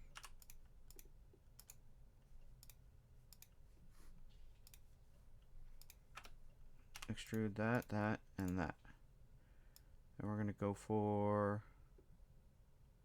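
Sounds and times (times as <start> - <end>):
computer mouse and keyboard clicks: 0.0 - 1.8, 5.8 - 8.7.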